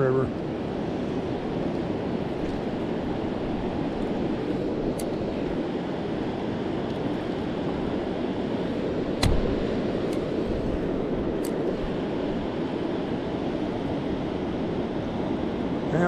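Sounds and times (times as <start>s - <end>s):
river current rushing: 0.0s - 16.0s
sharp knock with low thud: 9.2s - 9.6s.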